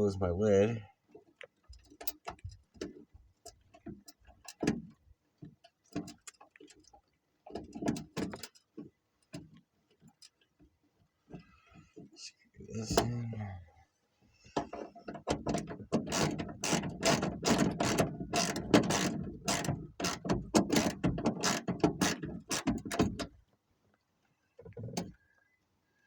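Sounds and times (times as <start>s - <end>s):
ratchet wrench clicking: 16.1s - 23.0s.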